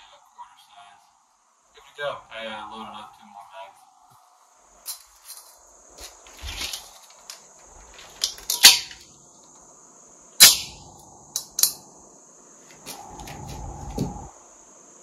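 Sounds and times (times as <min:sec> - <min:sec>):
gunshots with echo: 0:10.4 - 0:11.0.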